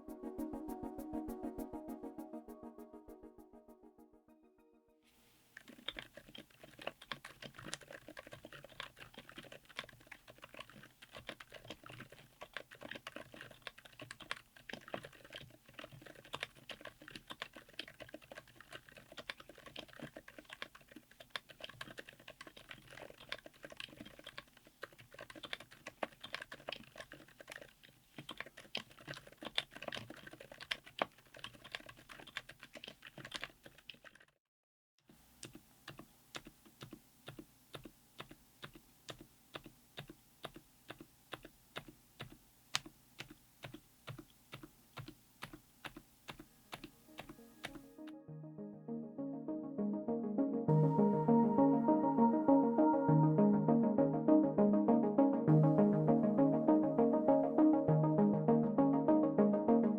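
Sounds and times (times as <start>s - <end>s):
typing on mechanical keyboard: 5.6s - 34.4s, 35.2s - 48.0s.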